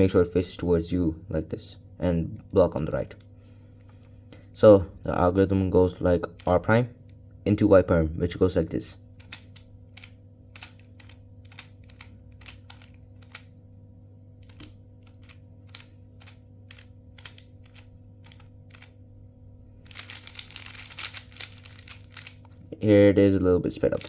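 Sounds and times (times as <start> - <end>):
steady low hum: 0.0 - 24.0
plastic puzzle cube clicking: 9.2 - 13.4, 14.4 - 18.9, 19.9 - 22.4.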